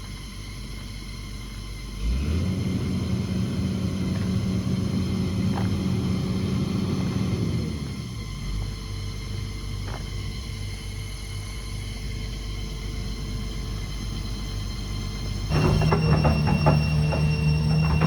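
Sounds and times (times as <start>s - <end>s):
excavator diesel engine revving: 2.0s - 10.8s, 13.0s - 18.0s.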